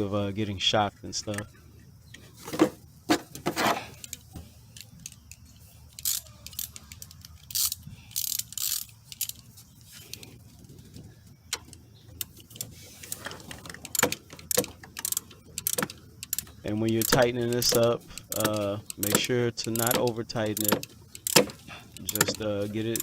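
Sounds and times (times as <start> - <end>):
tools clicking on metal: 3.9 - 10.3, 11.5 - 23.0
ratchet wrench bursts: 4.8 - 9.4.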